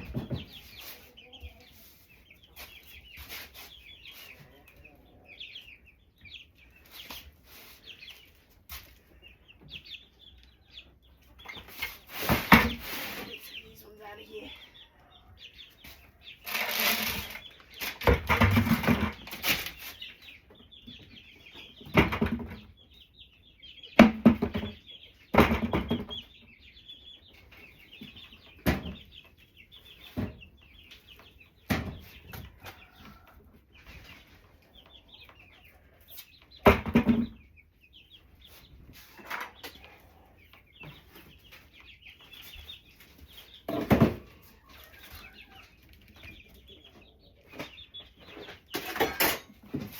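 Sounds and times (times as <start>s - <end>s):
knocks and rustles: 0.0s - 1.4s, 11.4s - 13.6s, 15.8s - 22.9s, 23.9s - 26.4s, 27.4s - 33.1s, 36.4s - 37.5s, 40.8s - 49.9s
chickens clucking: 0.0s - 49.9s.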